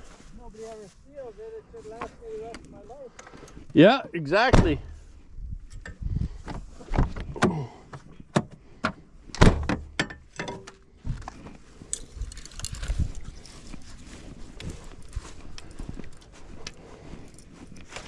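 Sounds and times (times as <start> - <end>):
heavy thump: 4.5 - 5.0.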